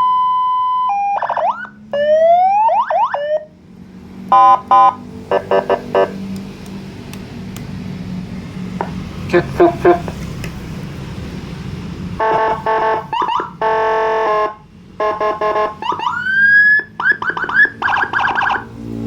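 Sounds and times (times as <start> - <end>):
electronic siren: 0.0 - 3.6, 4.3 - 6.2, 12.2 - 19.0.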